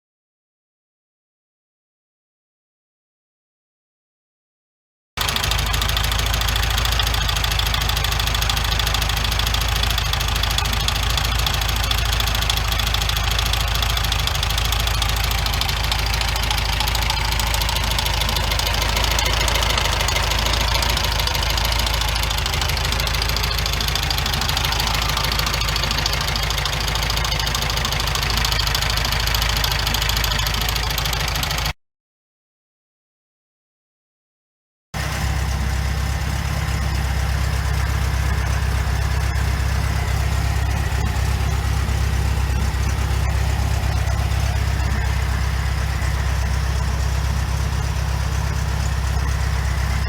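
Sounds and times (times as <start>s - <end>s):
car engine running: 5.2s - 31.8s, 35.0s - 50.0s
loud engine knocking: 5.2s - 31.8s, 35.0s - 50.0s.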